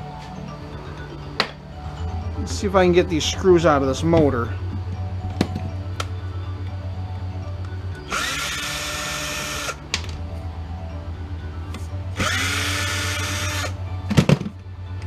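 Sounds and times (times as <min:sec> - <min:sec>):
power drill whining: 0:07.9 - 0:09.8, 0:12.1 - 0:13.8.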